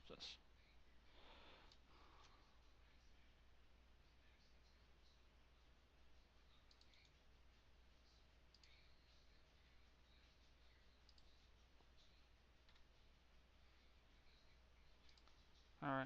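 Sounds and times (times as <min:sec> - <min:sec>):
low electrical hum: 0:00.0 - 0:16.0
computer mouse clicks: 0:06.6 - 0:07.2, 0:08.5 - 0:08.8, 0:11.0 - 0:11.4, 0:12.6 - 0:12.9, 0:15.0 - 0:15.5.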